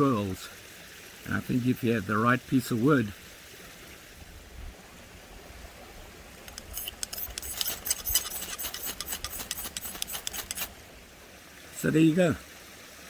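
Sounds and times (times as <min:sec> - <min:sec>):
knife scraping wood: 0:06.5 - 0:10.7.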